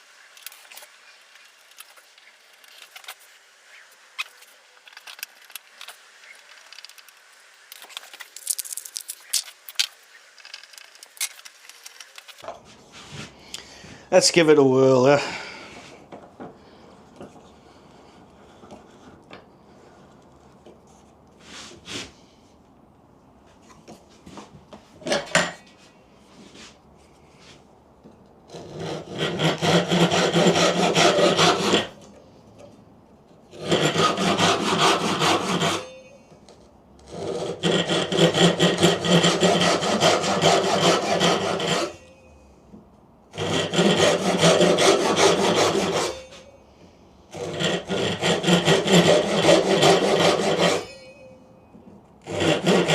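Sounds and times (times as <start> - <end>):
hand saw cutting wood: 28.5 - 32.2, 33.5 - 36.1, 37.0 - 42.1, 43.3 - 46.4, 47.3 - 51.0, 52.2 - 52.9.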